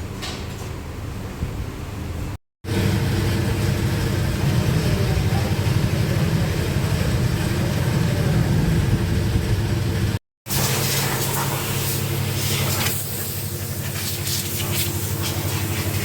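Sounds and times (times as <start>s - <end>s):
motorcycle engine running: 2.7s - 10.2s.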